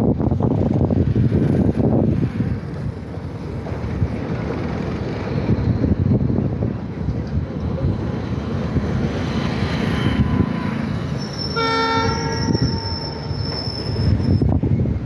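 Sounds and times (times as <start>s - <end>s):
train wheels rumbling: 0.0s - 15.0s
locomotive air horn: 10.0s - 14.2s.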